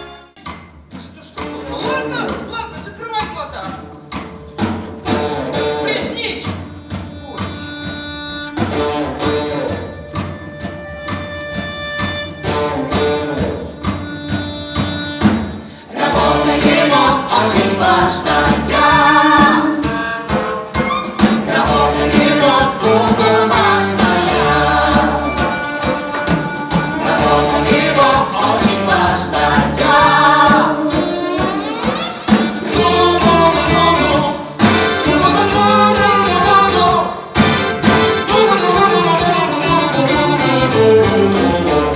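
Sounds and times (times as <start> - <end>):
orchestra playing: 0.0 - 0.4, 1.5 - 41.9
several voices singing: 15.7 - 41.9.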